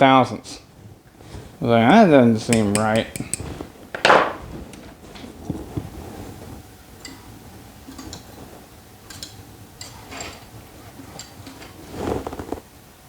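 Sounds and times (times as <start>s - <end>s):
light metallic ticks and clicks: 2.5s - 3.5s.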